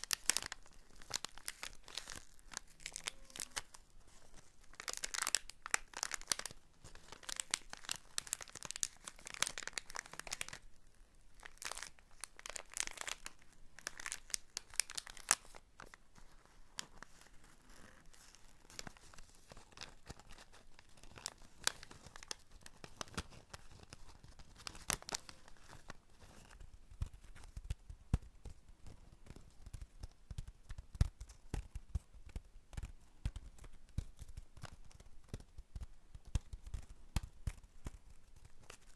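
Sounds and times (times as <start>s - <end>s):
crinkly material rustling: 0.0s - 38.9s.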